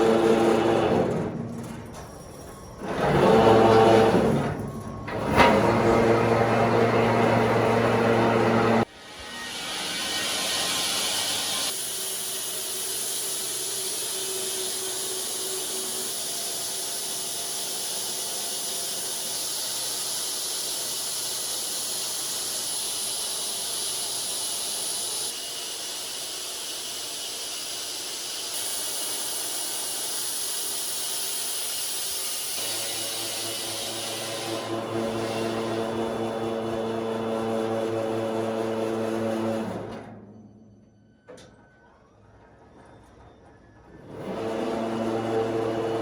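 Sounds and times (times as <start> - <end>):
bandsaw blade cutting wood: 0.0 - 1.2, 5.3 - 39.5.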